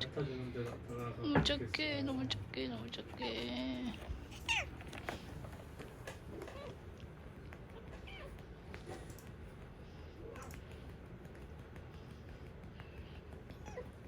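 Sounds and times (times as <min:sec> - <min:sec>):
kitten mewing: 0:03.2 - 0:05.2.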